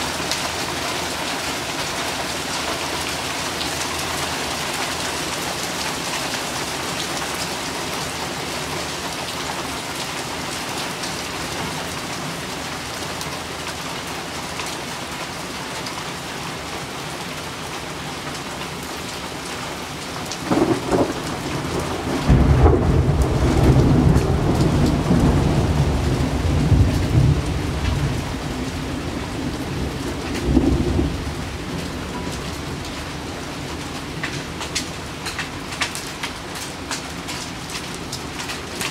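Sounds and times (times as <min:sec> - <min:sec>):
heavy rain and hail: 0:00.0 - 0:38.9
thunder rumbling: 0:20.4 - 0:32.9.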